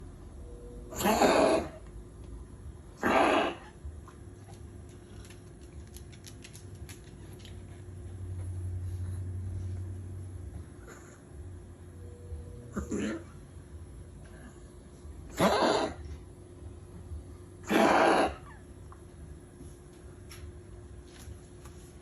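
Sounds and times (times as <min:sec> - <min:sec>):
pet wheezing cough: 0:00.9 - 0:01.8, 0:03.0 - 0:03.7, 0:15.3 - 0:16.0, 0:17.6 - 0:18.6.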